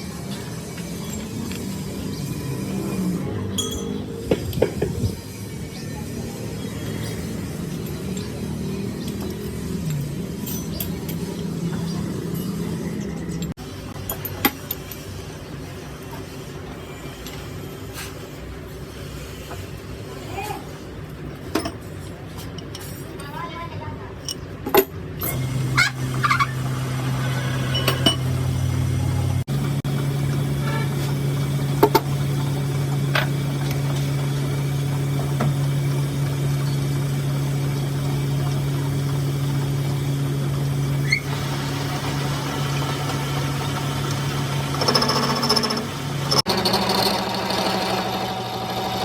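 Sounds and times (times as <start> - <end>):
electric motor running: 25.3 - 49.0.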